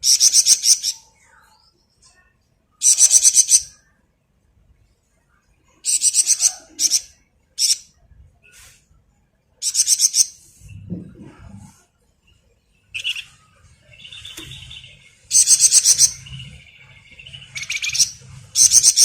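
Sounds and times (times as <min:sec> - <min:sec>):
songbird trilling in rattling bursts: 0:02.8 - 0:03.7, 0:09.6 - 0:10.4, 0:14.0 - 0:19.0
faint low rumble: 0:10.6 - 0:12.4.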